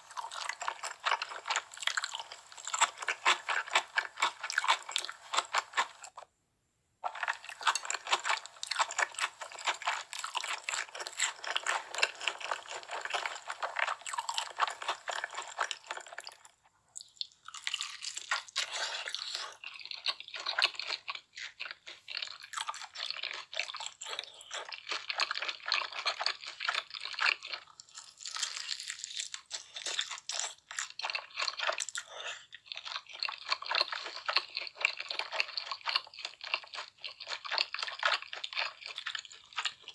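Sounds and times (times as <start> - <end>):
crunchy bites and chewing: 0.0 - 6.3, 7.0 - 39.9.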